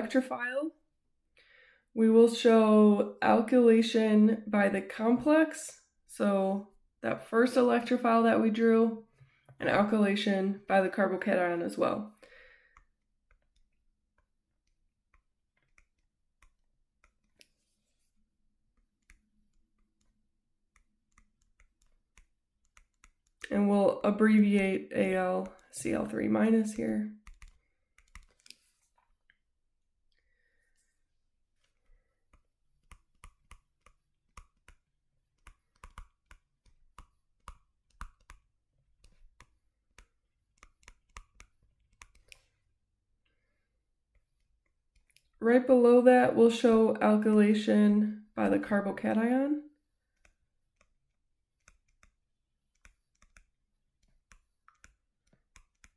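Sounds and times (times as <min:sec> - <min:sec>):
stylus tapping on tablet screen: 0:12.7 - 0:18.0, 0:18.7 - 0:23.5, 0:27.2 - 0:29.4, 0:31.6 - 0:42.6, 0:50.0 - 0:55.9.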